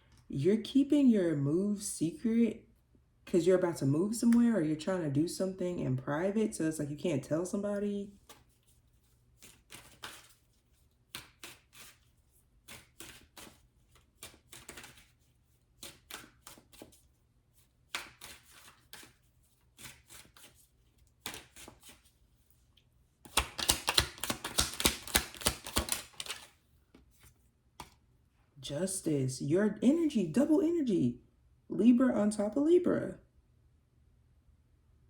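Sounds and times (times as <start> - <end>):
cards being shuffled: 8.2 - 22.2, 22.8 - 28.0
rapid card flicking: 9.4 - 10.4, 11.1 - 12.0, 14.2 - 15.1, 15.8 - 17.0, 23.3 - 26.5.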